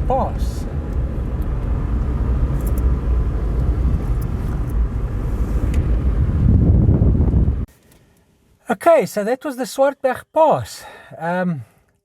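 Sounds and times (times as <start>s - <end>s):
engine and tyres rumbling: 0.0s - 8.3s.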